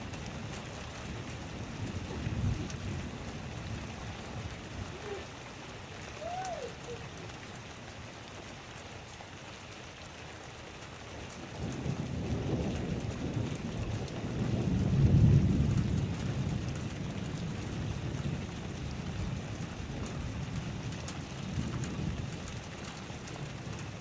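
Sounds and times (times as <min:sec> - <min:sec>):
thunder rumbling: 0:00.0 - 0:05.3, 0:11.3 - 0:24.0
heavy rain: 0:00.0 - 0:24.0.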